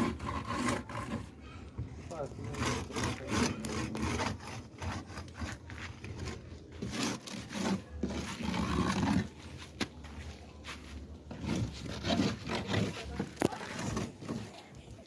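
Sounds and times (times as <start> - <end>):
hands and tools scraping steel: 0.0 - 9.9, 11.3 - 14.6.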